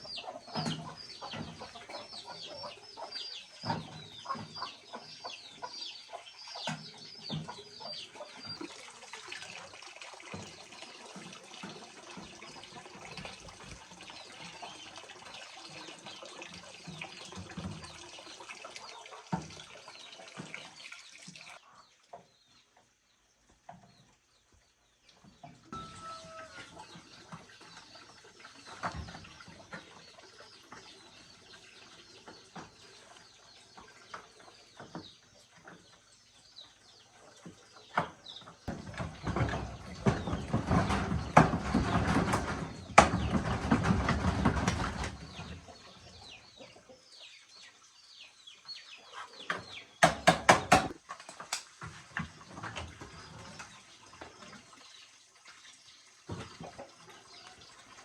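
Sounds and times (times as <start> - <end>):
birds calling: 0.0 - 8.7, 23.7 - 51.0
chickens chirping: 0.0 - 8.7, 25.2 - 50.1.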